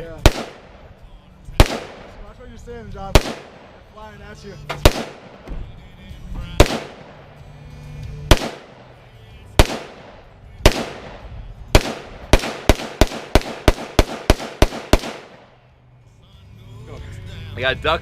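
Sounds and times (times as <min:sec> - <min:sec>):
rifle shots: 0:00.0 - 0:02.3, 0:03.1 - 0:04.0, 0:04.7 - 0:05.7, 0:06.5 - 0:07.4, 0:08.2 - 0:15.6.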